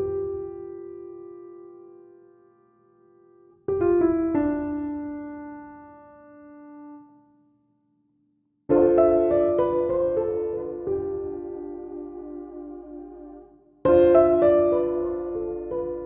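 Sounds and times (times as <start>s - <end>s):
piano music: 0.0s - 7.0s, 8.7s - 16.0s.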